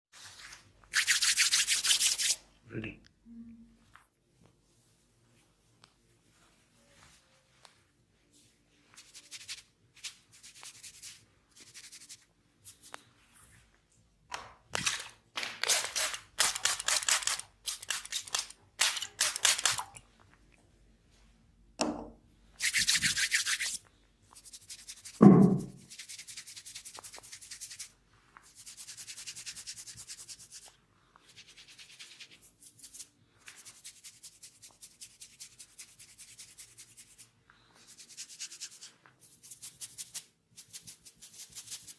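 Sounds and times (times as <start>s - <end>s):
hands scrubbing hair and scalp: 0.2s - 2.4s, 8.4s - 13.1s, 14.8s - 20.0s, 22.6s - 41.9s
loud short thud: 25.2s - 25.8s.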